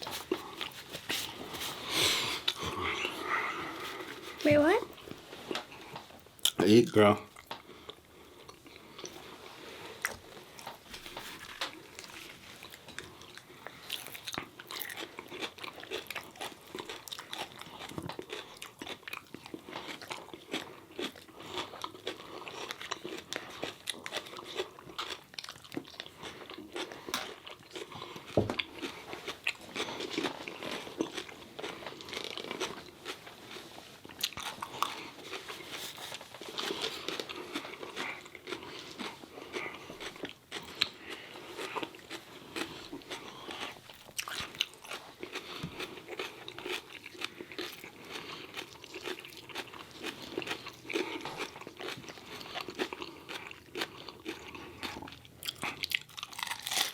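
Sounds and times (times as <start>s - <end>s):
crunchy chewing of fried food: 0.0s - 56.9s.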